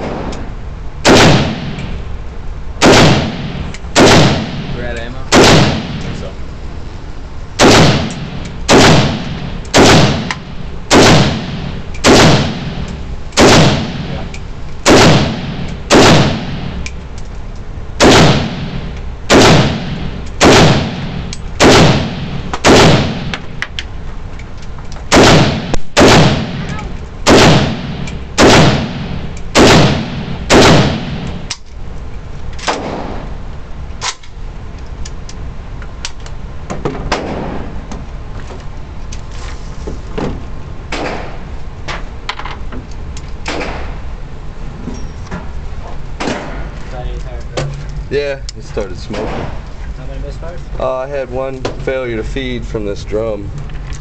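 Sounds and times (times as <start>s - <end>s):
rifle shots with echo: 1.0s - 1.9s, 2.8s - 6.3s, 7.6s - 16.8s, 18.0s - 23.4s, 25.1s - 31.5s, 32.6s - 33.3s, 37.1s - 37.8s.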